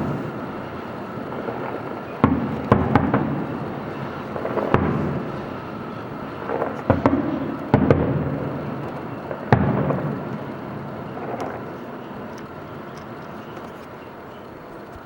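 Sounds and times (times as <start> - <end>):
fireworks bangs: 0.0 - 14.4
rolling rumble and crackle: 0.0 - 15.0.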